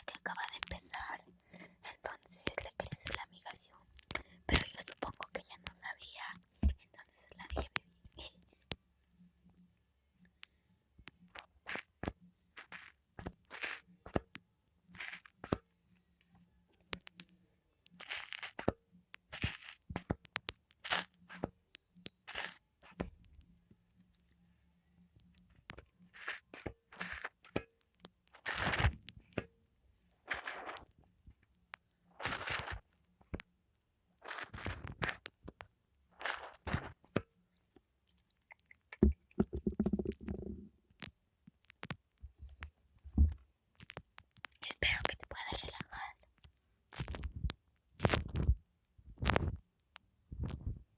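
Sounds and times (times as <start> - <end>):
foam squeezed and rubbed: 12.6 - 13.9, 18.0 - 18.7, 19.3 - 19.8, 22.3 - 22.6, 30.3 - 30.9, 32.2 - 32.8, 34.2 - 35.1.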